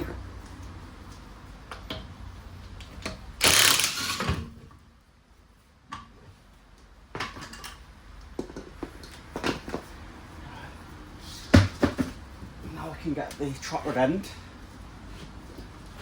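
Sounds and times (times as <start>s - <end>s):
loud burst of tool noise: 3.4s - 4.4s.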